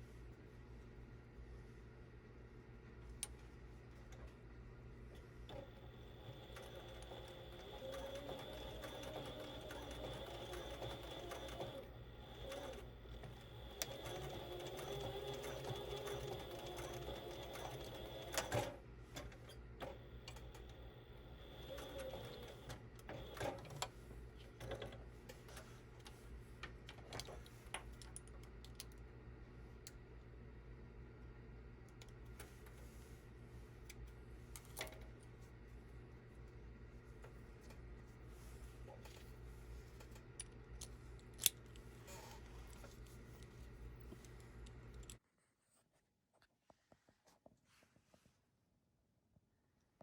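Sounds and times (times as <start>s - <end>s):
sewing machine stitching: 5.5s - 18.8s, 19.8s - 23.8s.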